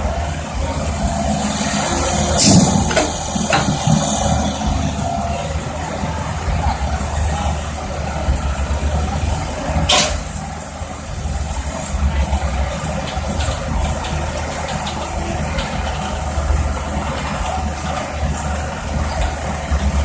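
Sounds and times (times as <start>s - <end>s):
excavator diesel engine rumbling: 0.0s - 20.0s
sharp metal clank: 2.4s - 4.6s, 9.9s - 10.3s.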